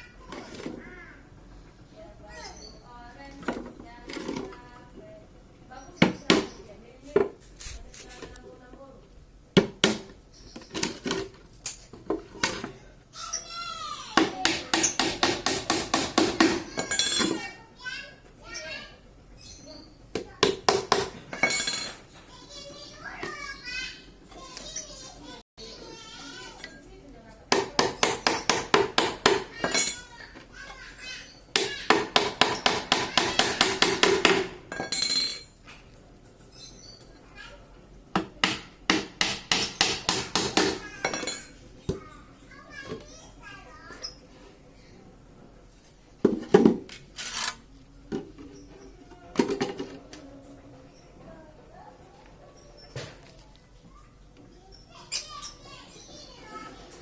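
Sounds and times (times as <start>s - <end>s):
hammer knocking on wood: 14.2s - 16.8s, 20.2s - 21.2s, 27.5s - 29.6s, 31.6s - 34.6s, 38.2s - 40.9s.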